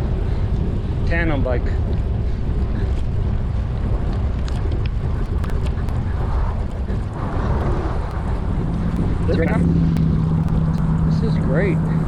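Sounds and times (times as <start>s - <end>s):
wind buffeting microphone: 0.0s - 12.0s
faint ticks: 3.8s - 11.0s.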